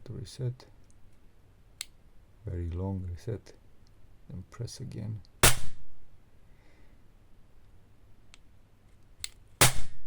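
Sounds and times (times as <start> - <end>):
pistol shot with slide cycling: 5.4 - 5.8, 9.6 - 10.0
trigger and slide clicks: 9.2 - 9.9.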